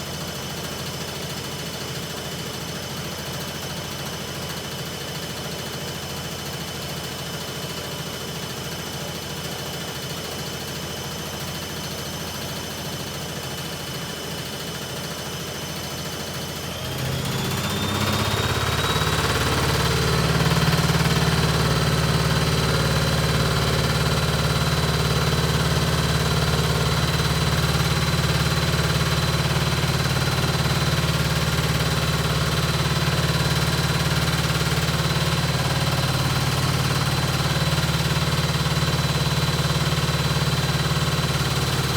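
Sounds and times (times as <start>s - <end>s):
washing machine spinning: 12.8s - 41.9s.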